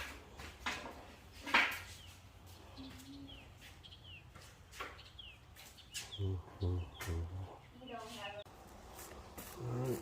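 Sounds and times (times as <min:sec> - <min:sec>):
small bird chirping: 0:01.8 - 0:08.5.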